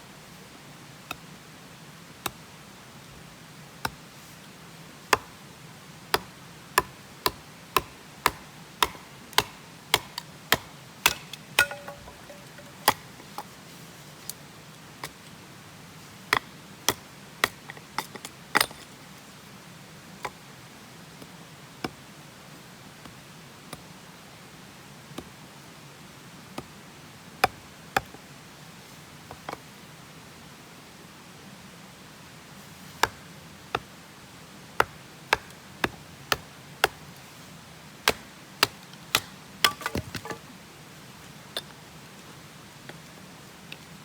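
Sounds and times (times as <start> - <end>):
hatchet splitting firewood: 2.2 - 2.4, 5.1 - 5.4, 6.1 - 13.5, 16.3 - 18.9, 33.0 - 33.9, 34.8 - 37.2, 38.0 - 40.5.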